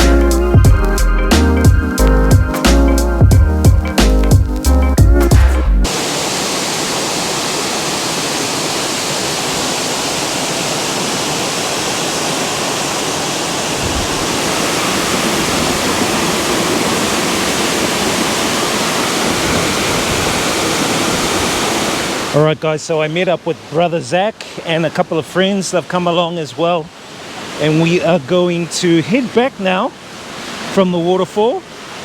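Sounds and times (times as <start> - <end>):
waterfall rushing: 5.3 - 32.0.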